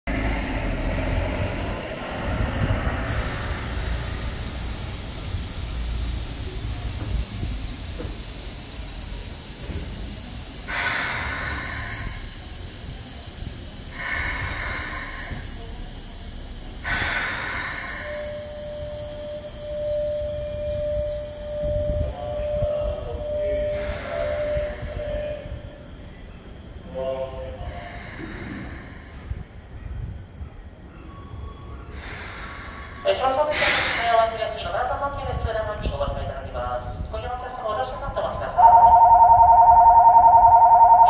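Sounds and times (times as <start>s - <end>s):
train running rumble: 0.1s - 38.6s
short hissing bursts: 3.1s - 18.6s, 32.0s - 34.2s
steady hiss: 3.1s - 20.0s
steady tone: 38.6s - 41.0s.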